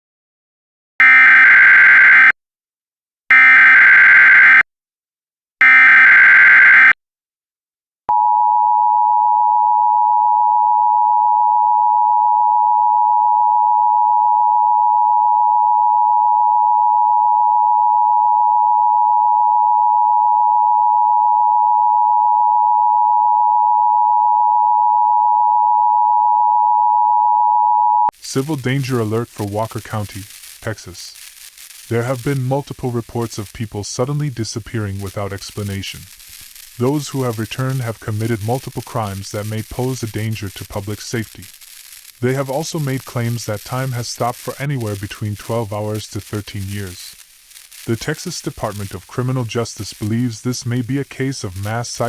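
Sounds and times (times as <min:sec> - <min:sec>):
warbling digital data bursts: 0:28.2 - 0:52.0.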